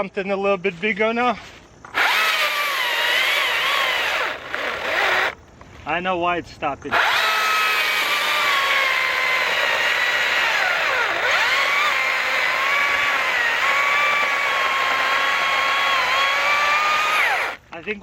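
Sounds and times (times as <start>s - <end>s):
electric chainsaw cutting log: 1.9s - 5.4s, 6.9s - 17.6s.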